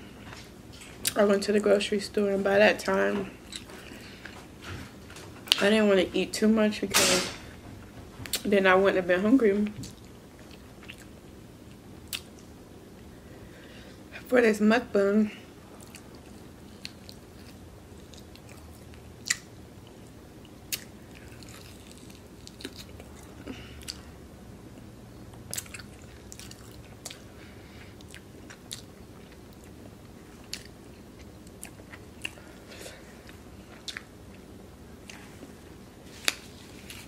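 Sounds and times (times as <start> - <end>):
low steady hum: 0.0 - 37.0
person chewing food: 3.4 - 4.6, 9.8 - 12.5, 15.8 - 24.1, 24.8 - 35.5.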